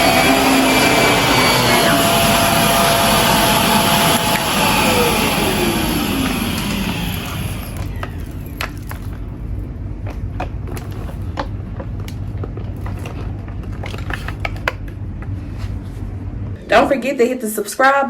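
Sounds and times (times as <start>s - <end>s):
vacuum cleaner motor winding down: 0.0s - 8.9s.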